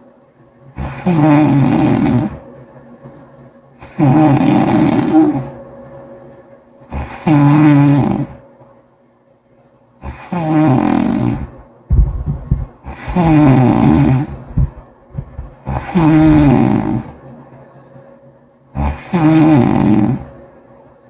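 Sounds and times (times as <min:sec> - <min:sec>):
person snoring wetly: 0:00.8 - 0:02.4, 0:03.8 - 0:05.5, 0:06.9 - 0:08.4, 0:10.0 - 0:11.5, 0:12.8 - 0:14.8, 0:15.6 - 0:17.2, 0:18.8 - 0:20.3.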